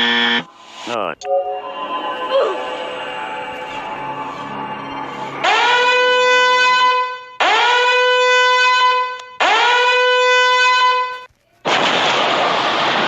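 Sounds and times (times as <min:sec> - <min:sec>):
loud horn blasts: 0:04.2 - 0:11.3.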